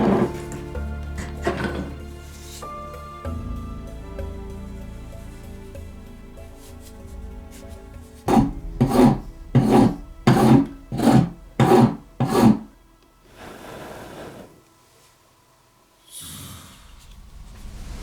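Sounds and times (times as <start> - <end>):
hand scraping strokes on wood: 0.0 - 3.1, 6.4 - 15.2.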